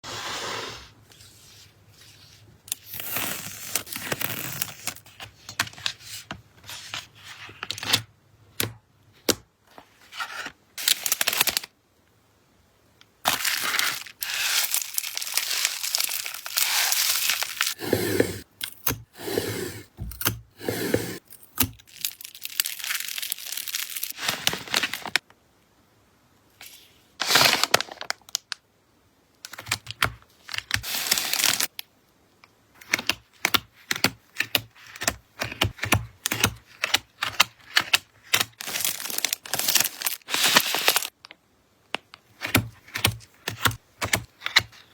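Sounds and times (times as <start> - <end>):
packaging crinkling and tearing: 2.7 - 5.2, 10.2 - 11.7, 13.2 - 17.8, 21.6 - 25.2, 27.2 - 28.6, 29.5 - 31.8, 35.5 - 41.2.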